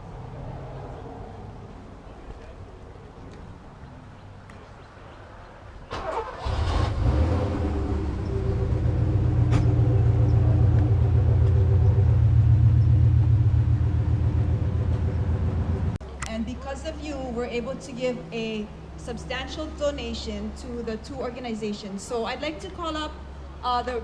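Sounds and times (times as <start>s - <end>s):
car engine cranking and idling: 5.9s - 16.0s.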